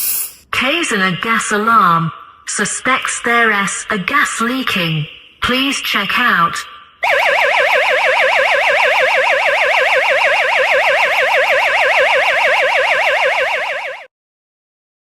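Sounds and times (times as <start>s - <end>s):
gas alarm siren warbling: 7.0s - 14.1s.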